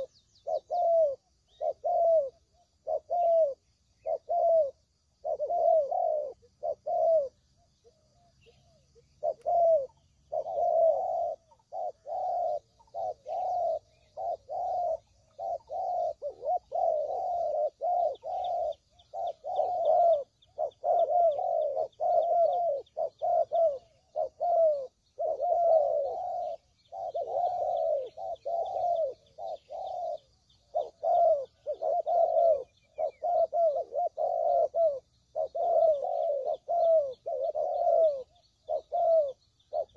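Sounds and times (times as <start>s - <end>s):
doves cooing: 0.0s - 39.9s
small birds chirping: 0.0s - 39.9s.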